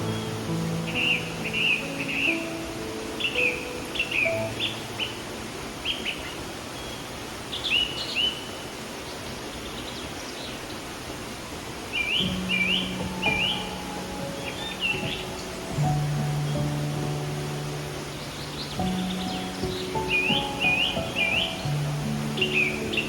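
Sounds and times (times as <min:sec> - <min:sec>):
songbirds chirping: 0:00.0 - 0:23.0
stream flowing: 0:00.0 - 0:23.0.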